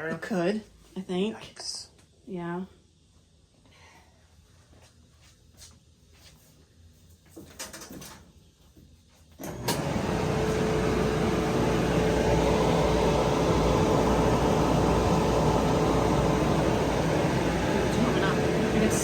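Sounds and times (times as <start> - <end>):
clothes dryer drum whirring: 7.4 - 19.0
steady hum: 8.5 - 19.0.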